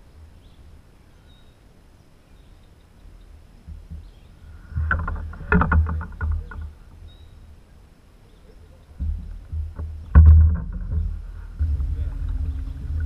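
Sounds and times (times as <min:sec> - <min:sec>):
hollow knocks in a canoe: 0:03.6 - 0:07.0, 0:08.9 - 0:13.0
wind on microphone: 0:03.6 - 0:07.2, 0:08.9 - 0:13.0.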